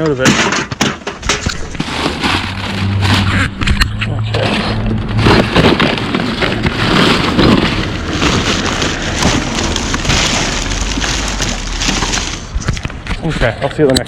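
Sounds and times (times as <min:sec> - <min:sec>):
plastic bag rustling: 0:00.8 - 0:03.8, 0:04.4 - 0:13.3.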